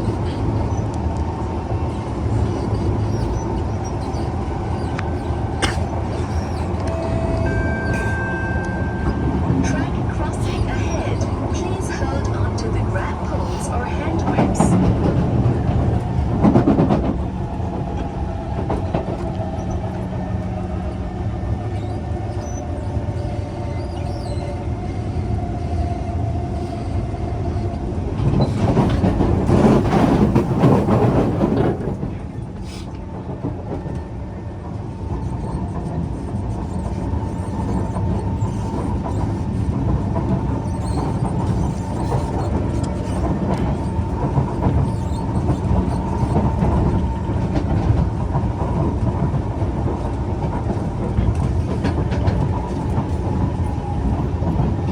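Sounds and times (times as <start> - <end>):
train wheel and running noise: 0.0 - 54.9
faint whine: 4.9 - 14.3.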